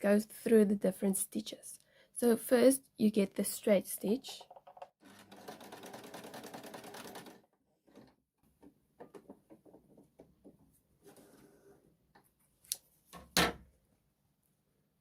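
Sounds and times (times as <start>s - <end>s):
sewing machine clatter: 4.4s - 8.2s.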